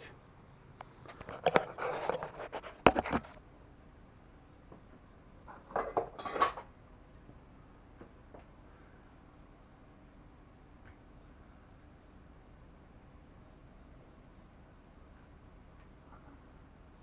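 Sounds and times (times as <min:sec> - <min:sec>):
metal tools clinking and scraping: 0:05.7 - 0:06.7.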